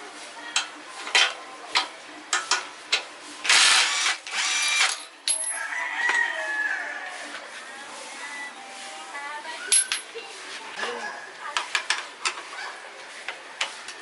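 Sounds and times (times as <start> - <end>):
handheld power tool running: 3.5 - 5.0.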